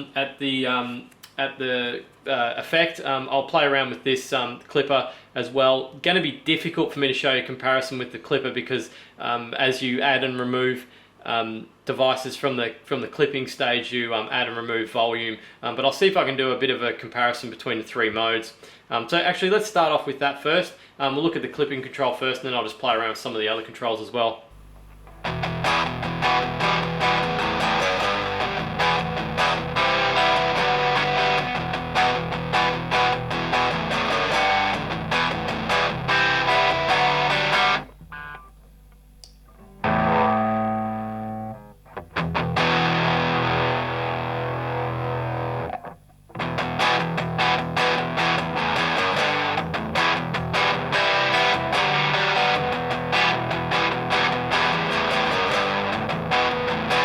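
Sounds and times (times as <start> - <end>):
overdriven electric guitar: 24.6 - 38.6, 39.4 - 57.0.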